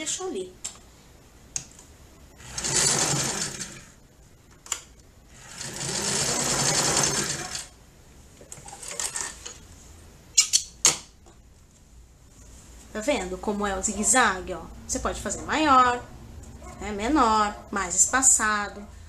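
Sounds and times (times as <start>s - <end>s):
sewing machine running: 2.4s - 4.0s, 5.3s - 7.7s.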